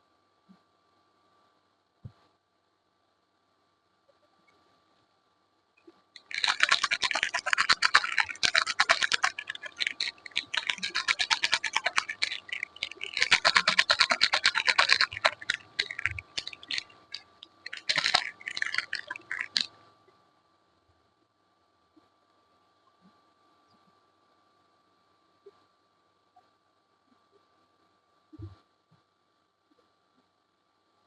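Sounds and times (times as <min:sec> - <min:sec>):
soap wrapping crackling: 0:06.2 - 0:19.7.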